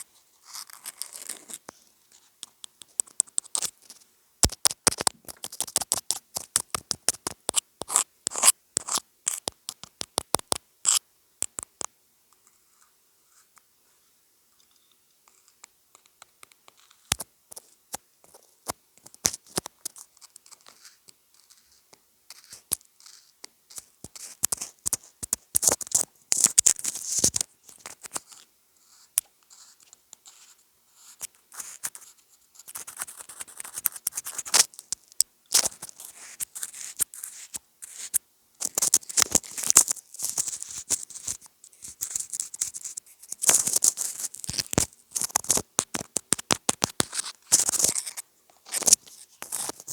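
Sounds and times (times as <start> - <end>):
scratching and crinkly rustling: 0.0 - 4.0, 16.7 - 49.9.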